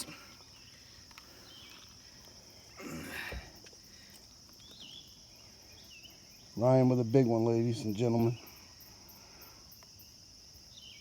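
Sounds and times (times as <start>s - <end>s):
crickets chirping: 0.0s - 11.0s.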